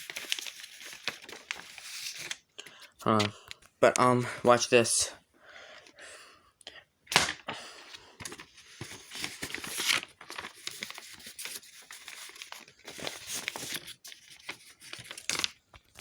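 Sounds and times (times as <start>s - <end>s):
paper crinkling and rustling: 0.0s - 3.3s, 8.0s - 16.0s.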